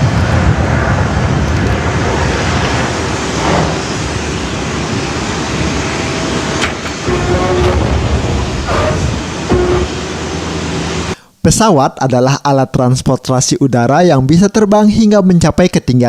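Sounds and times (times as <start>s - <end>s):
aircraft engine rumble: 0.0s - 11.2s.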